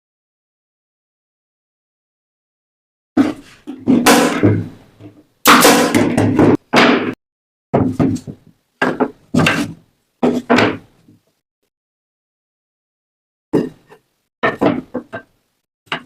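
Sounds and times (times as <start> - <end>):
loud knocks on wood: 5.5 - 7.2.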